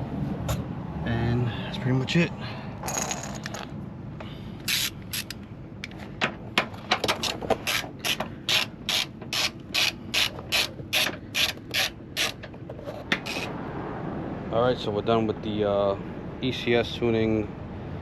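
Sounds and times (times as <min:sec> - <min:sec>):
ratchet wrench clicking: 0:04.6 - 0:05.4, 0:07.0 - 0:12.4, 0:13.2 - 0:13.5.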